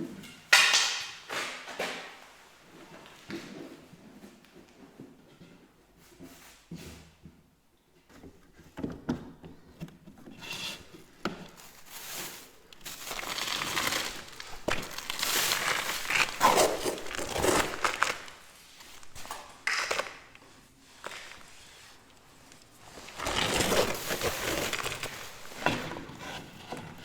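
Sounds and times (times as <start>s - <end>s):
material crinkling and rustling: 10.8s - 27.0s.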